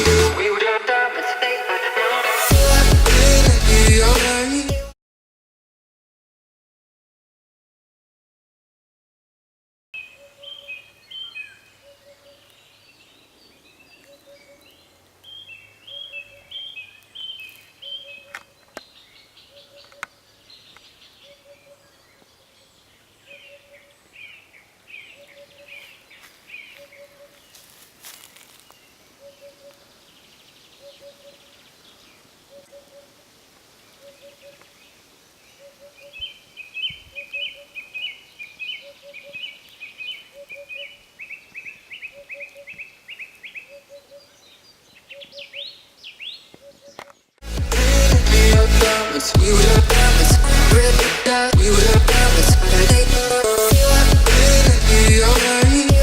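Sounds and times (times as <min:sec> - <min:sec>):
songbirds singing: 0:10.0 - 0:47.4.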